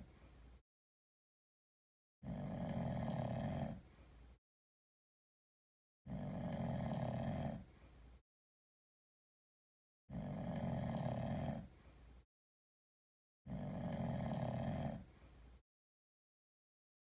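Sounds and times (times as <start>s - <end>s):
cat snoring: 2.3s - 3.8s, 6.1s - 7.6s, 10.1s - 11.7s, 13.5s - 15.1s.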